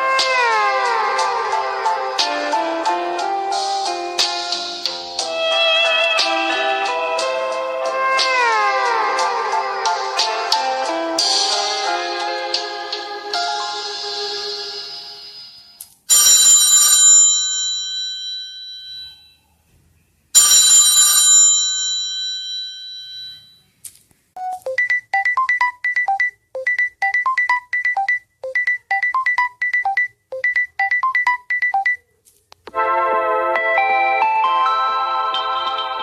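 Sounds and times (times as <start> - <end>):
ringtone melody: 0.0 - 17.8, 24.4 - 32.0, 32.7 - 36.0
bell-like chimes: 21.3 - 23.6.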